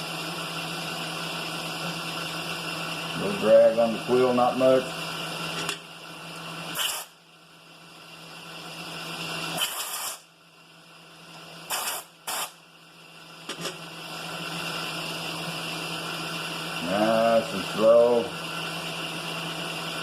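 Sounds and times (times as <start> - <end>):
milling machine motor hum: 0.0 - 9.6, 12.6 - 20.0
cutting hiss: 6.8 - 7.2, 9.6 - 10.3, 11.7 - 12.6.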